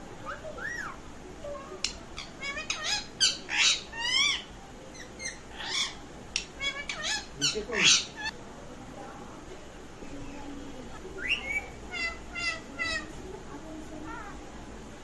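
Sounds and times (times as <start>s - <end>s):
parrot squawking and whistling: 0.2s - 1.0s, 1.8s - 6.0s, 6.6s - 8.3s, 11.2s - 13.1s.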